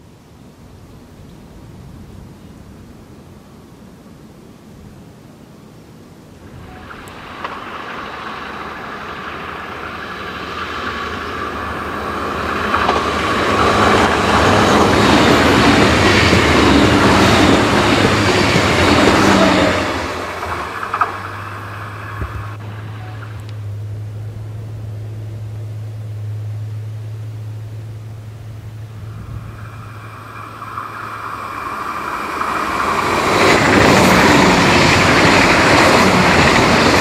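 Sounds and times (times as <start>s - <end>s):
steady low hum: 6.2s - 35.2s
electric train passing: 6.2s - 37.0s.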